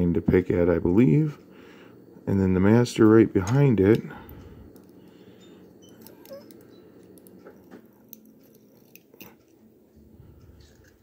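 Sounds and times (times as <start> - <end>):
low steady hum: 0.0 - 11.0
small metal lock parts clicking: 5.8 - 9.6.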